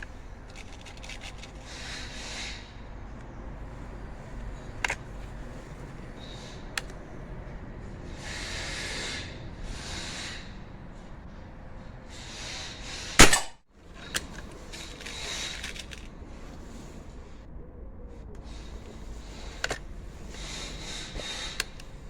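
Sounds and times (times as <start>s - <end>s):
rustling hissing noises: 0.0s - 17.5s, 18.1s - 22.0s
air rifle shot: 13.2s - 13.6s.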